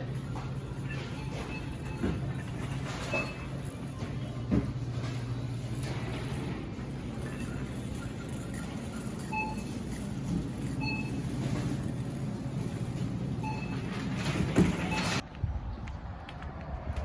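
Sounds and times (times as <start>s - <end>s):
store background noise: 0.0s - 15.2s
short electronic beeps: 7.2s - 11.9s.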